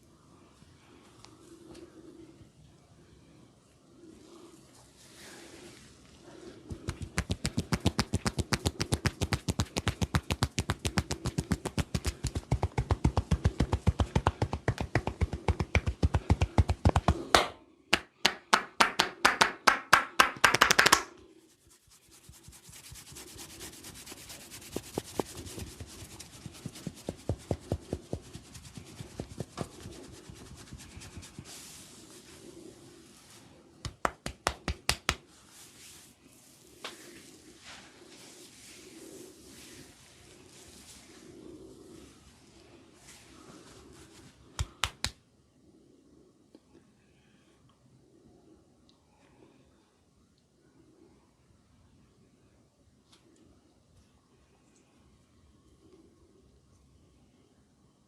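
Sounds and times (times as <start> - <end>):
rubbing of scalp: 6.6 - 17.4, 20.5 - 44.8
hands patting a head: 6.7 - 31.8, 33.8 - 35.4, 36.8 - 37.3, 44.1 - 45.2
sharp slaps: 6.8 - 21.1, 33.8 - 35.2, 44.6 - 45.2.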